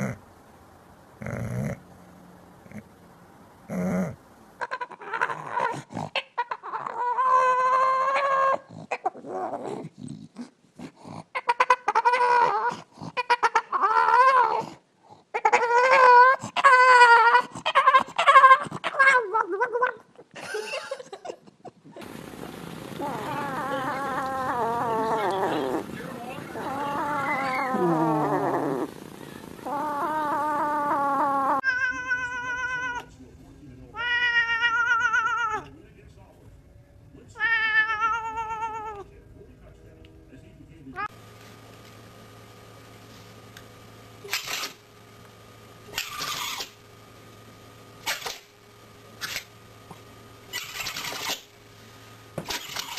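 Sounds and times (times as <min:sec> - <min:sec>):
animal howling: 0:03.7 - 0:09.8, 0:11.4 - 0:14.7, 0:15.4 - 0:20.0, 0:22.0 - 0:33.1, 0:33.9 - 0:35.7, 0:37.4 - 0:39.1
cat yowling: 0:04.6 - 0:09.6, 0:11.4 - 0:14.7, 0:15.4 - 0:20.0, 0:22.9 - 0:33.1, 0:33.9 - 0:35.7, 0:37.4 - 0:39.1.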